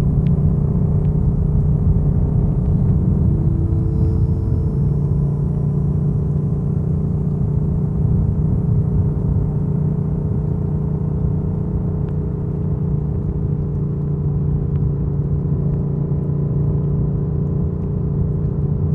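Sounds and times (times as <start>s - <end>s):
motorcycle engine idling: 0.0s - 13.1s.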